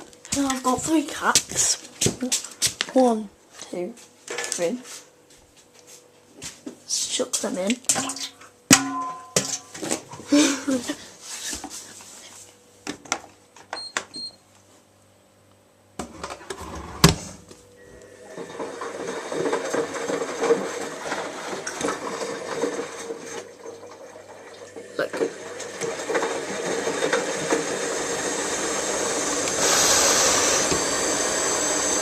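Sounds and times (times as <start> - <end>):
washing machine water inlet rushing: 18.0 - 32.0.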